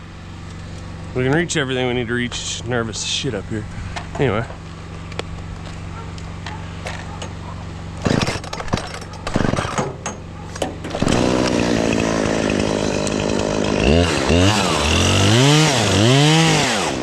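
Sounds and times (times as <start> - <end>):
chainsaw idling and revving: 7.9 - 9.9, 10.8 - 17.0.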